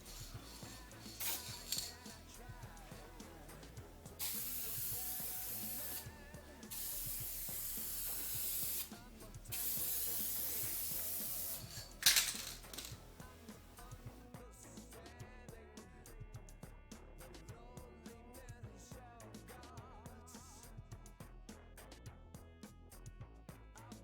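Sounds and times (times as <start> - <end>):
aerosol can spraying: 0.0 - 14.2.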